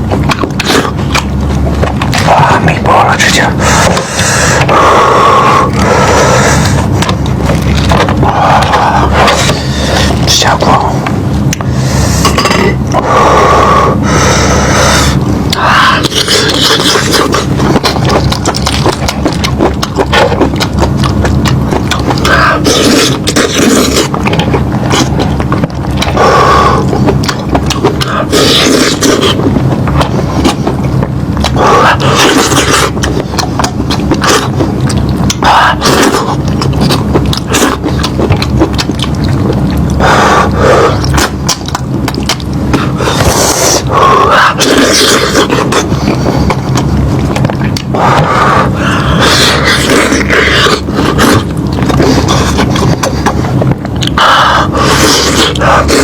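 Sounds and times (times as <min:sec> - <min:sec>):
person chewing meat: 0:00.0 - 0:56.0.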